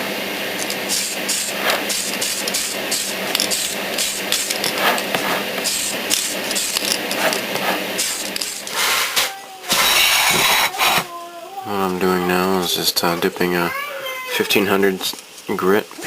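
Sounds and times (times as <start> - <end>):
wet sandpaper rubbing on plastic: 0.8 - 9.1.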